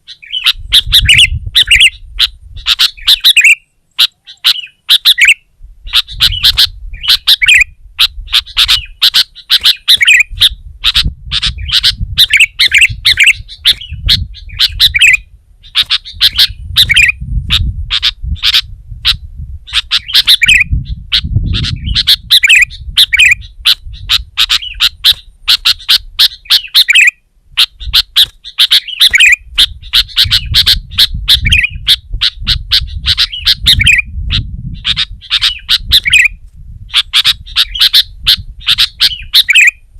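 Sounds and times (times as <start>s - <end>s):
bulbul singing: 0.0s - 39.9s.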